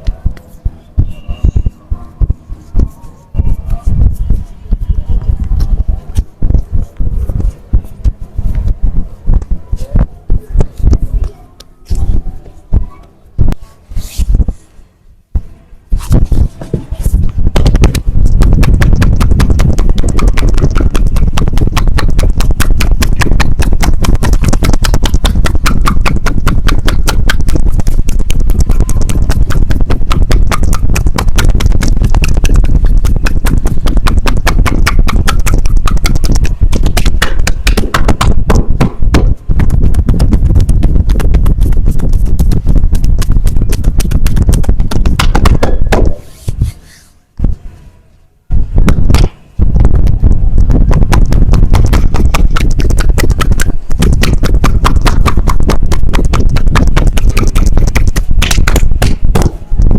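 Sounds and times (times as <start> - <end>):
hands slapping a back rapidly: 16.0 - 46.7, 48.8 - 59.6.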